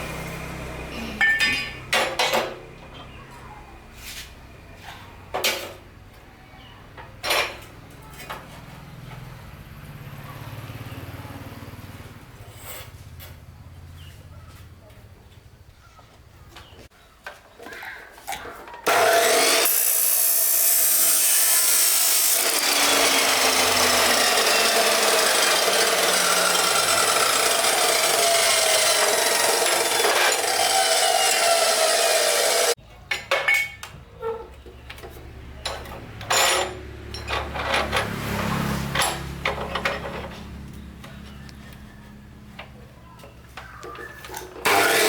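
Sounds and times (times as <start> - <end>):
power tool rasping: 18.9 - 32.8, 44.6 - 45.0
knocks and clatter: 34.7 - 41.4.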